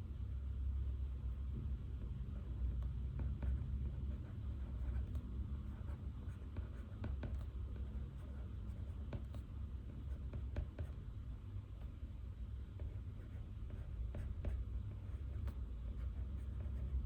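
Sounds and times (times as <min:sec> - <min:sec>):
low room hum: 0:00.0 - 0:17.0
pen scratching on paper: 0:03.1 - 0:11.0, 0:12.7 - 0:17.0.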